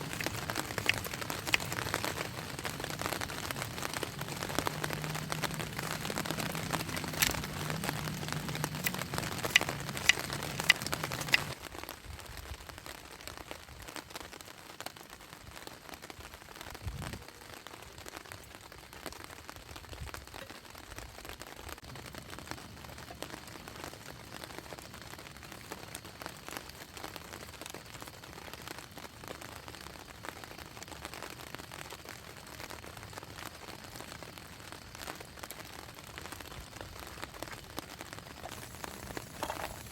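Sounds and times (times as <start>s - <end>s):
low hum: 0.0s - 11.6s
sharp ticks: 0.0s - 11.6s
rain hissing: 0.0s - 20.2s, 21.2s - 39.9s.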